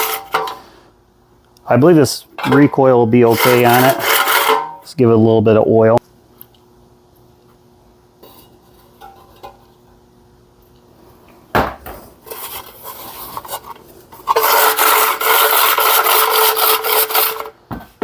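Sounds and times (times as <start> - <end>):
loud steady rasping: 3.2 - 4.6, 14.3 - 17.5.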